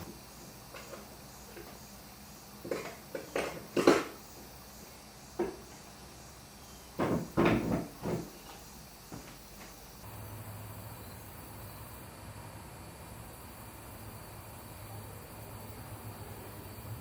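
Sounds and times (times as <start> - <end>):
objects knocking and clunking: 0.0 - 1.8, 2.6 - 4.2, 5.4 - 5.8, 7.0 - 9.8.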